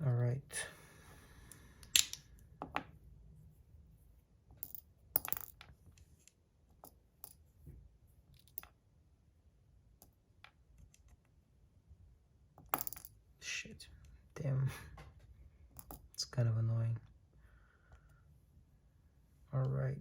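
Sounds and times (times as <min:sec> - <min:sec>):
ceramic balls clicking: 0:01.8 - 0:02.3.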